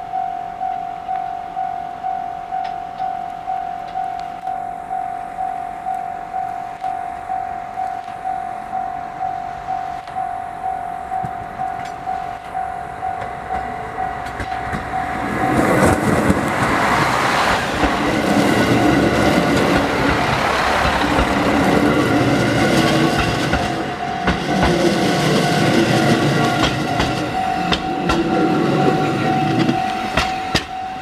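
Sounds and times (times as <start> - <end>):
level crossing warning bell: 0.0 - 31.0
train running noise: 0.0 - 31.0
wheels clattering over rail joints: 11.2 - 31.0.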